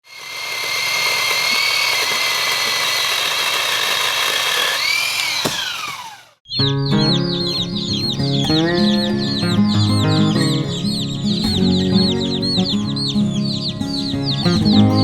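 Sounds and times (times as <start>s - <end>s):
electric chainsaw motor whining: 0.0s - 6.5s.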